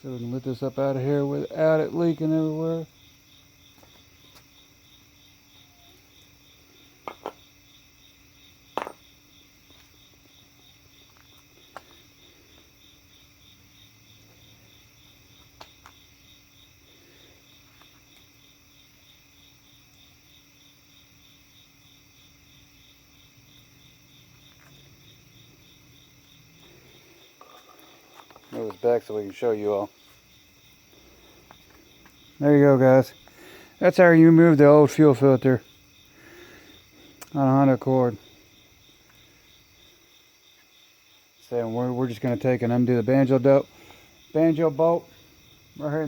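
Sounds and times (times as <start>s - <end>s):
crickets chirping: 0.0s - 46.0s.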